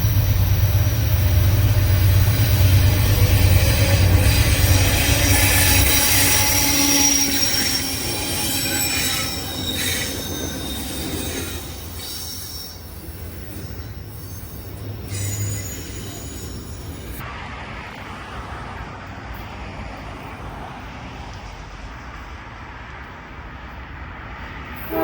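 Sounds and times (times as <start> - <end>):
train wheels squealing on rails: 0.0 - 17.2, 24.8 - 25.0
railroad cars rolling rumble: 0.0 - 25.0.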